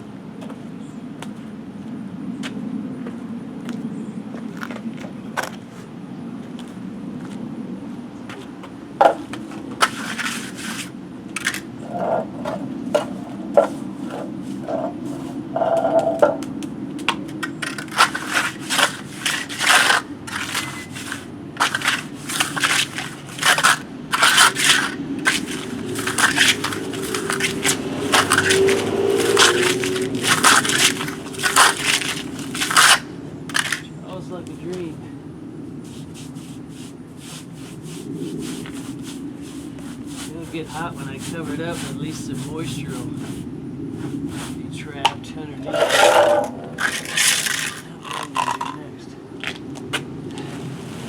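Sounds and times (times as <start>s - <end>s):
trowel scraping cement: 9.8s - 16.2s, 17.2s - 33.9s, 35.9s - 44.6s, 45.6s - 48.9s.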